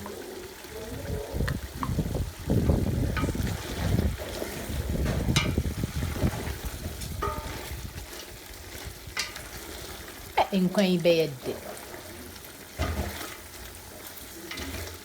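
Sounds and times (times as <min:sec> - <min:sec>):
pot being stirred: 0:00.0 - 0:15.0.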